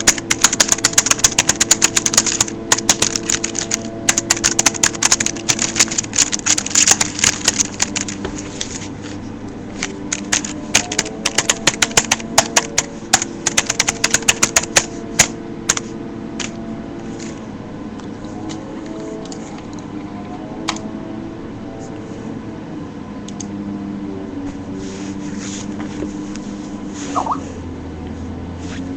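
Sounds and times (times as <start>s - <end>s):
keyboard key clicks: 10.2s - 15.8s.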